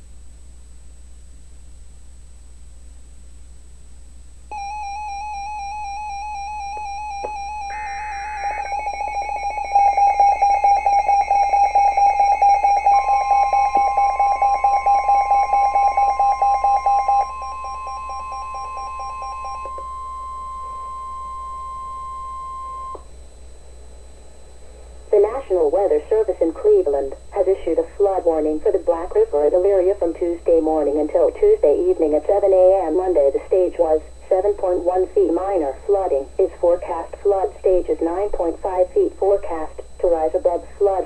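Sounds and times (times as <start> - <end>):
warbling electronic alert tone: 4.5 - 19.8
steady single-pitched warning tone: 4.5 - 41.0.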